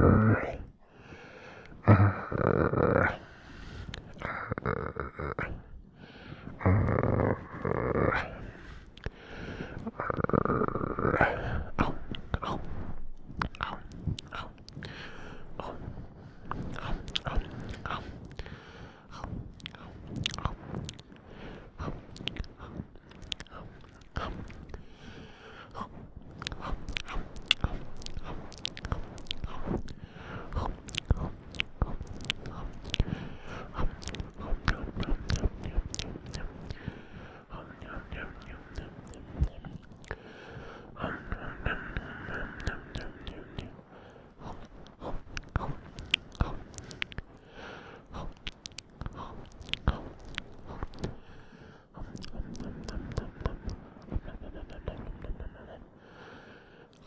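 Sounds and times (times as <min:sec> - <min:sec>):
wet chewing mouth sounds: 0:06.8 - 0:55.8.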